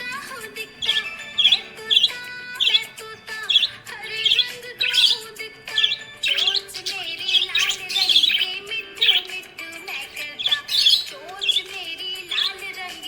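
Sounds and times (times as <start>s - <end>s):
background music: 0.0s - 13.0s
budgerigar chirping: 0.8s - 13.0s.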